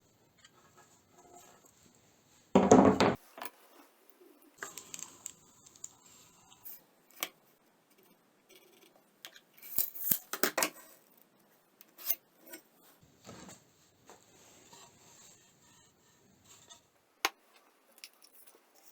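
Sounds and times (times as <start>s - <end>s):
small metal objects clinking: 9.6s - 10.4s, 17.9s - 18.9s.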